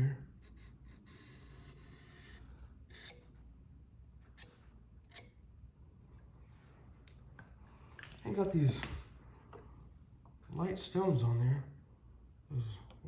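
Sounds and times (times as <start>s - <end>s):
marker rubbing on knife blade: 0.4s - 3.4s.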